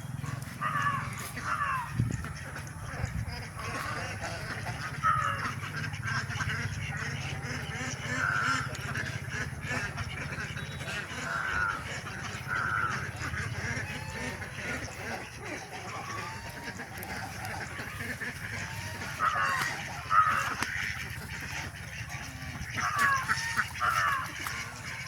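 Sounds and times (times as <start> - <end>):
poultry calling: 0.0 - 25.0
steady low hum: 0.0 - 25.0.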